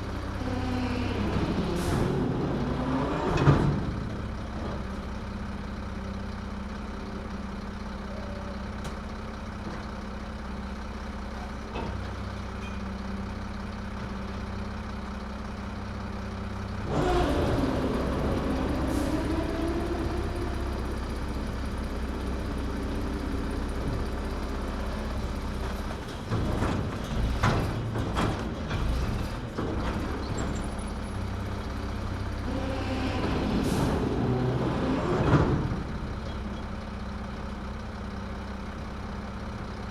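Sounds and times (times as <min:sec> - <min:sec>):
garbage truck engine revving: 0:00.0 - 0:05.1, 0:16.8 - 0:37.2.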